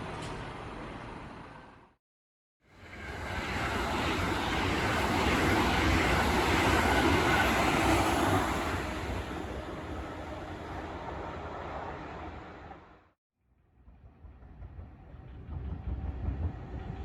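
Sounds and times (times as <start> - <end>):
freight train rumbling past: 2.8 - 13.1, 13.9 - 17.0.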